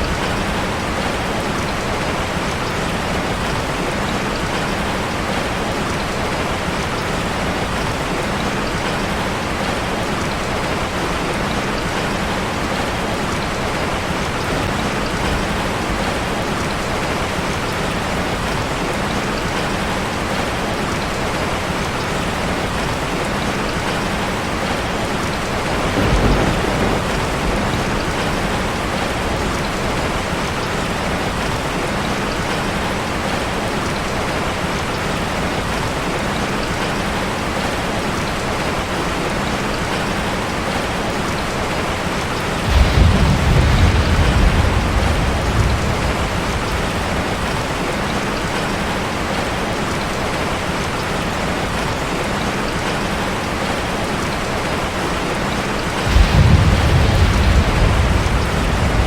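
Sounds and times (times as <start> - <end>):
steady rain on street: 0.0 - 59.0
low rumble: 56.1 - 59.0.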